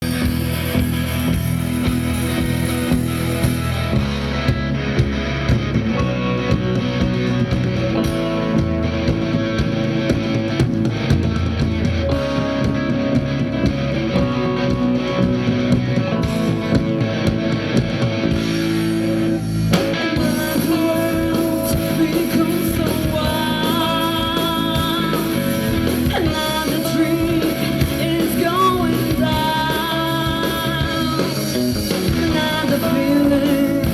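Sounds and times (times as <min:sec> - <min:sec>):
rock band playing: 0:00.0 - 0:33.9
person singing: 0:19.9 - 0:33.9.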